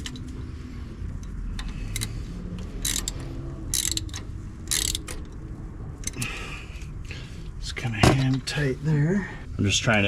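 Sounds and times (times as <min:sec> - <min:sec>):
ratchet wrench clicking: 0:01.2 - 0:05.4, 0:06.0 - 0:06.2.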